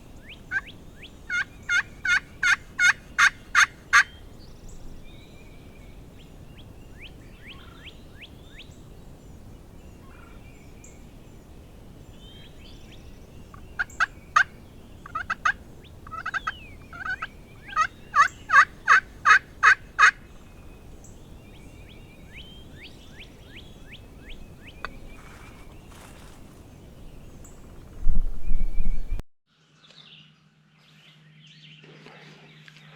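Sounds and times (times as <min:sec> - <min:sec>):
songbirds singing: 0:00.0 - 0:32.9
turkey yelps: 0:01.3 - 0:04.1, 0:14.4 - 0:20.2
low rumble: 0:27.6 - 0:29.2.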